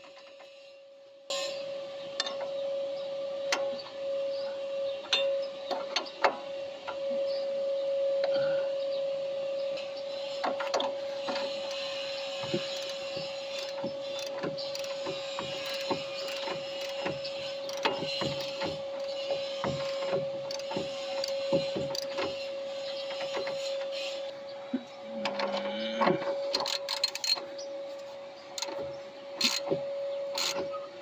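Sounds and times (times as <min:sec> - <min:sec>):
steady hum: 0:00.5 - 0:31.0
ratcheting wrench clicks: 0:12.6 - 0:17.1, 0:26.5 - 0:27.4, 0:28.6 - 0:28.8, 0:29.4 - 0:29.7, 0:30.3 - 0:30.6.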